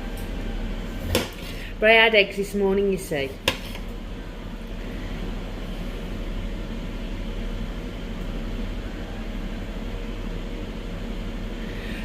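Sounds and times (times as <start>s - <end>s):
fan humming: 0.0s - 12.0s.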